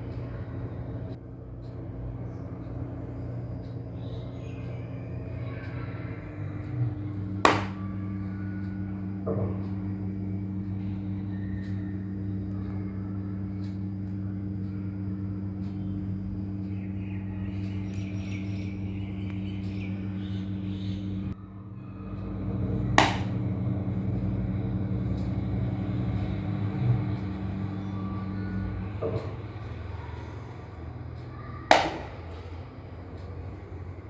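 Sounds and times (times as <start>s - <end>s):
low electrical hum: 0.0s - 34.0s
sharp loud tap: 7.5s - 7.8s, 23.0s - 23.3s, 31.7s - 32.2s.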